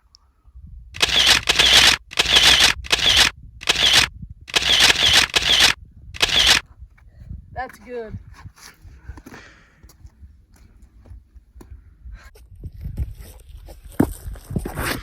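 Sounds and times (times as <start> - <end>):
camera shutter clicking: 1.0 - 6.6.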